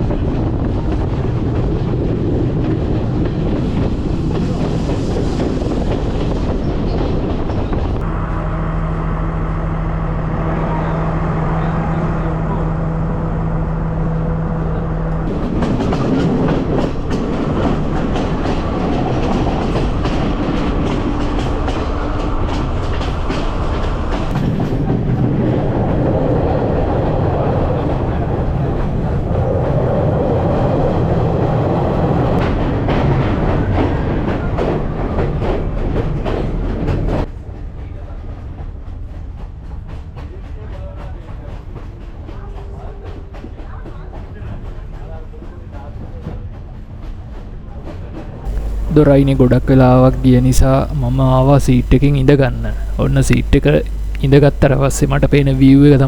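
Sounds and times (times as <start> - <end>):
train wheels clattering on rails: 0.0 - 8.0, 15.2 - 29.9, 31.5 - 50.7.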